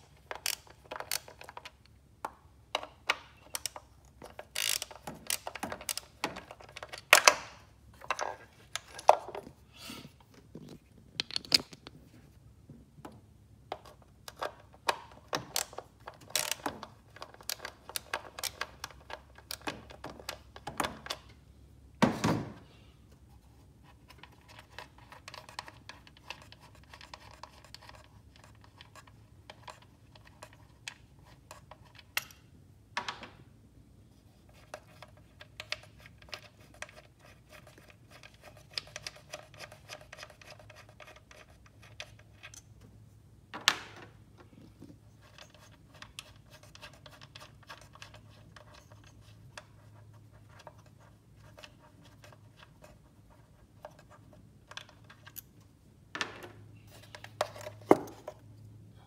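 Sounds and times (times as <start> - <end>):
hand tools clicking and scraping: 2.8 - 12.0.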